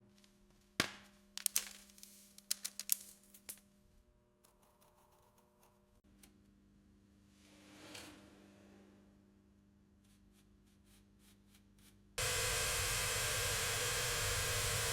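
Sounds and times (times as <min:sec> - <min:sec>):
steady low hum: 0:12.2 - 0:14.9.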